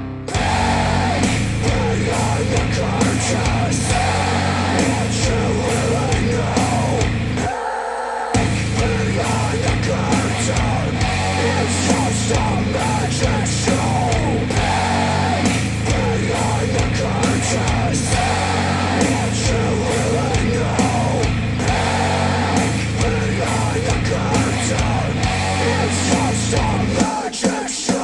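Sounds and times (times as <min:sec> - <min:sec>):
heavy rock music over speakers: 0:00.0 - 0:07.6, 0:08.2 - 0:28.0.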